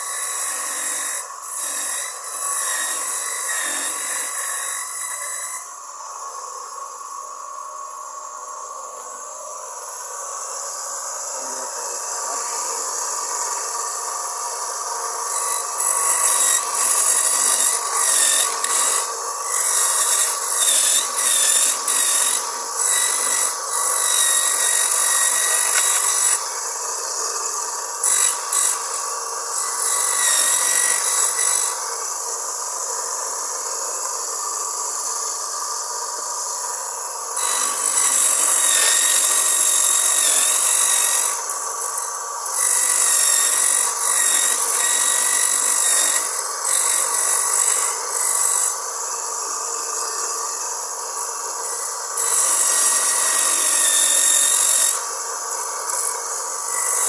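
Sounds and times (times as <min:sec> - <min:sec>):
coconut grating rasp: 0:00.0 - 0:05.7, 0:14.5 - 0:32.3, 0:37.4 - 0:57.0
electric motor running: 0:00.0 - 0:57.0.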